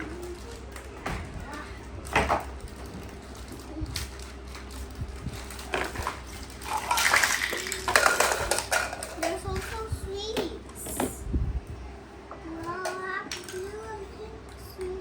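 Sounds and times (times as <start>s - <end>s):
plastic toy pieces clattering: 2.0s - 9.9s, 12.8s - 13.8s.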